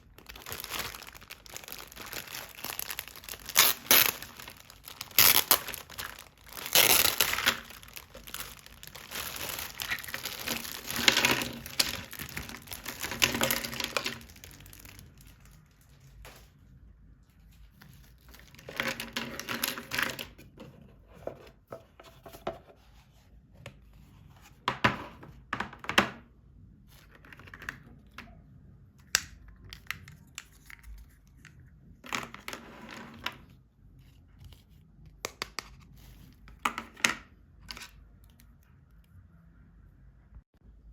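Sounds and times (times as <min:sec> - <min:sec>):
packaging crinkling and tearing: 0:00.0 - 0:15.8.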